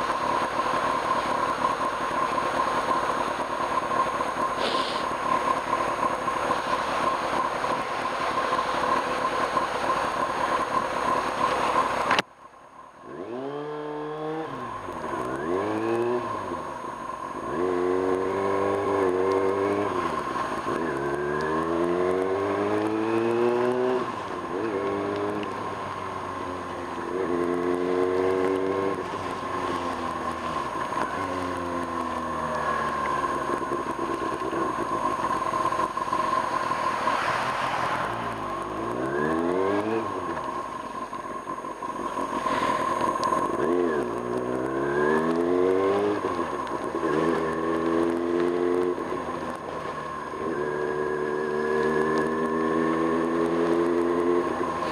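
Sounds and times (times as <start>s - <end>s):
loud steady rush of noise: 0.0s - 54.9s
motorcycle engine revving: 13.0s - 54.9s.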